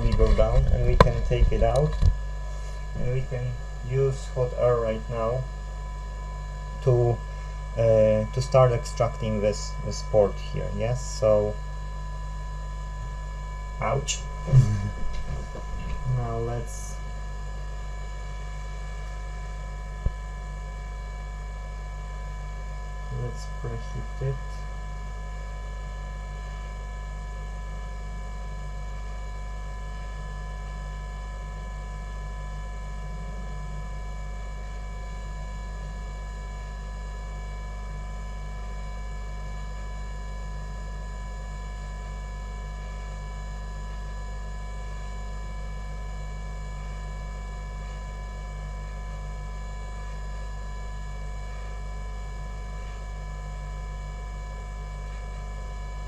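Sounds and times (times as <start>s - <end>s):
hot-air station blowing: 0.0s - 5.8s, 12.9s - 17.4s
electrical hum: 0.0s - 56.0s.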